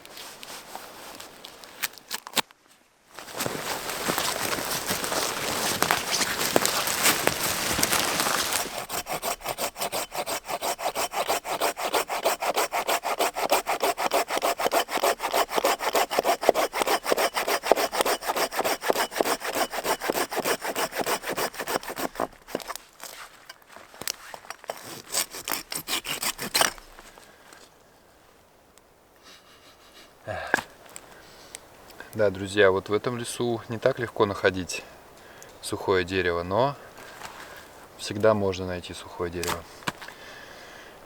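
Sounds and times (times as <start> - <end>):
loud rustling: 3.2 - 10.2
hand saw cutting wood: 4.4 - 23.4, 24.1 - 27.0.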